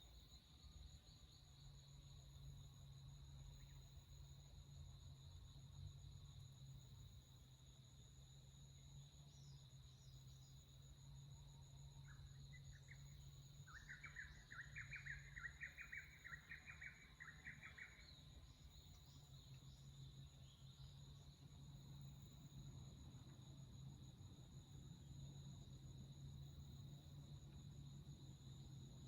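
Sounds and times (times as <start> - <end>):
bird chirping: 13.6 - 18.2.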